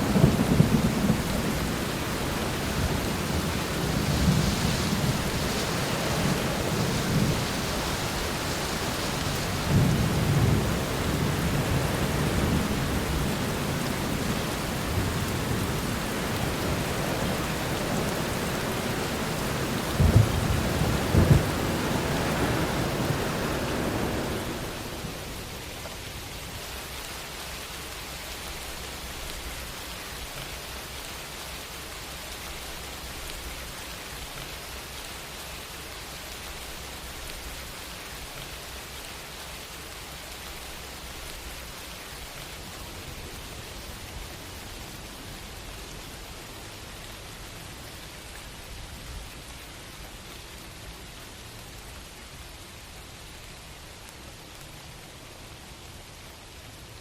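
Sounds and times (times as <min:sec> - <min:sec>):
low rumbling thunder: 0:00.0 - 0:25.6
heavy rain: 0:00.0 - 0:57.0
sharp thunder cracks: 0:19.8 - 0:25.2.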